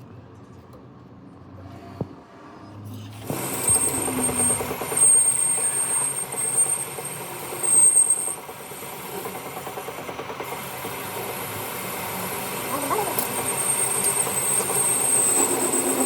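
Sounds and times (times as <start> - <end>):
workshop machine rattling: 3.2 - 16.0
high machine whine: 3.3 - 8.6, 11.2 - 16.0.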